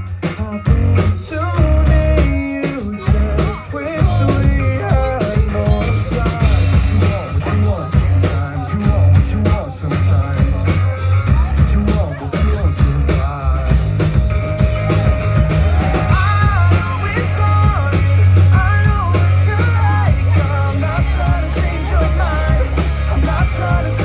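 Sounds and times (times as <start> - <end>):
rock band playing live: 0.0 - 24.0
person singing: 0.2 - 24.0.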